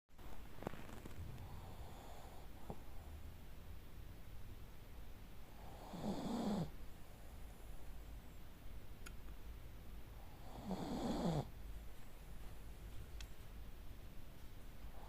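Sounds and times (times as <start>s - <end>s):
dog snoring: 0.9s - 3.1s, 5.5s - 6.8s, 10.2s - 11.6s.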